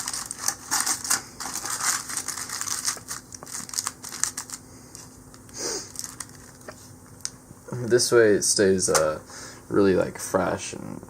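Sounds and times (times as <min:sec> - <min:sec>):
aluminum foil crinkling: 0:00.0 - 0:07.3.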